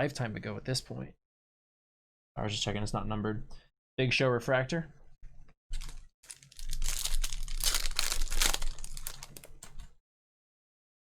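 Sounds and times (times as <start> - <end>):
foil wrapper crinkling and ripping: 5.7 - 9.9.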